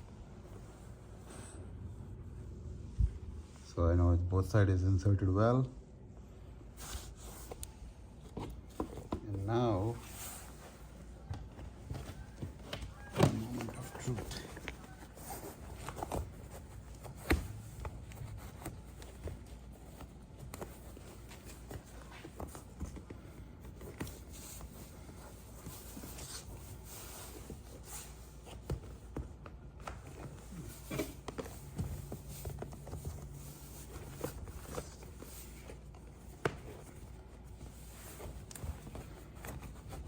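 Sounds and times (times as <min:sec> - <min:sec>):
cover rustling: 0:08.2 - 0:40.0.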